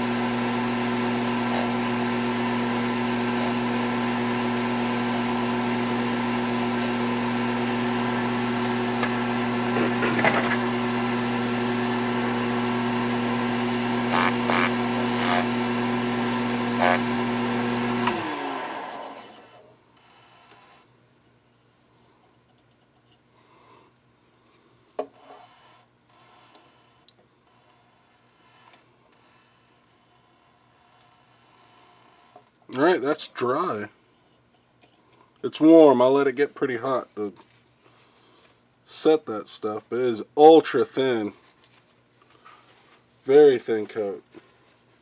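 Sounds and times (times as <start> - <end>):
wood lathe motor humming: 0.0 - 20.9, 25.1 - 32.6.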